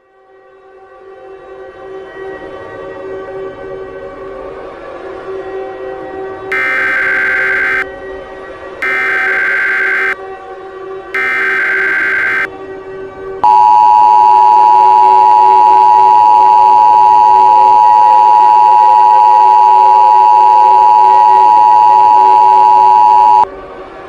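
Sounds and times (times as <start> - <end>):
screechy data bursts: 6.5 - 7.8, 8.8 - 10.2, 11.2 - 12.5
loud steady dual tone: 6.5 - 7.9, 8.8 - 10.2, 11.2 - 12.5, 13.4 - 23.5.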